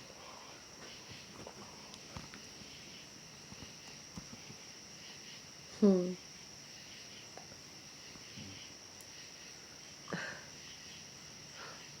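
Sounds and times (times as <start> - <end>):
woman sniffling: 10.1 - 10.5.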